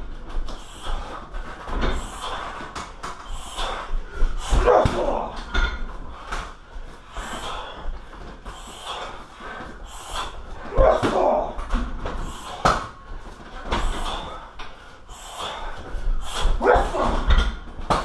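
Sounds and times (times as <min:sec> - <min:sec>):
forceful exhalations: 0:00.0 - 0:18.0
punches thudding on heavy bag: 0:10.6 - 0:13.0.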